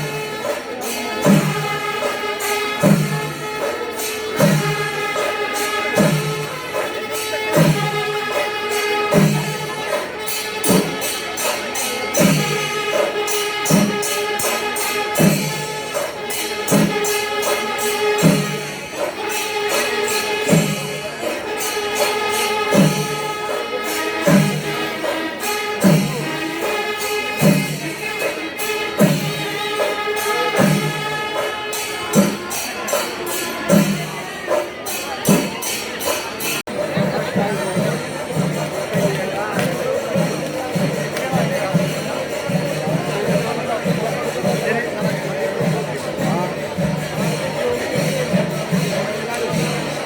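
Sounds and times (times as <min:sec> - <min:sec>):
sustained wind instrument: 0:00.0 - 0:35.1
clashing cymbals: 0:00.0 - 0:50.0
low drum beat: 0:36.7 - 0:50.0.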